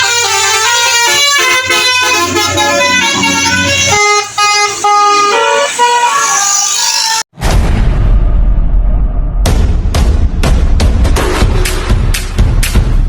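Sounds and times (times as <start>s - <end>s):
musical bus air horn tune: 0.0s - 7.3s
low rumble: 1.6s - 4.2s, 7.4s - 12.9s.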